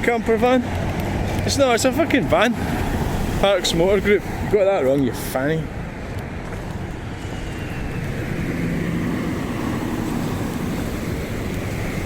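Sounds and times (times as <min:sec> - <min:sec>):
vehicle driving past: 0:05.8 - 0:12.0.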